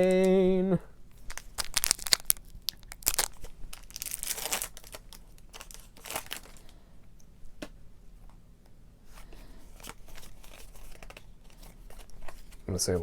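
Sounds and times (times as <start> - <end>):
foil wrapper crinkling and tearing: 1.1 - 6.8, 9.8 - 12.6.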